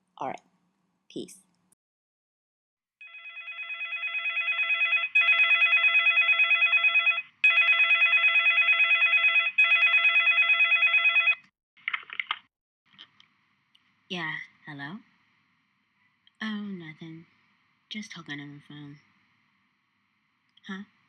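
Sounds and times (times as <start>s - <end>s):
telephone ringing: 3.0s - 11.5s.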